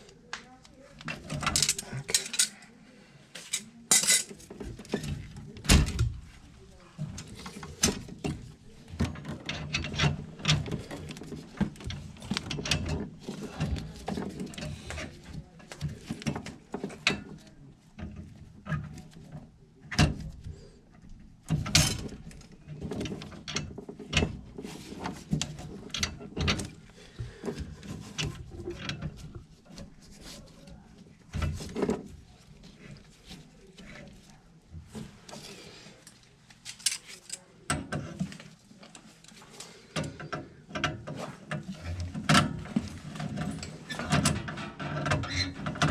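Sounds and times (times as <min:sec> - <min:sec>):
metal tools clinking and clanking: 0:01.1 - 0:02.6, 0:03.4 - 0:05.2.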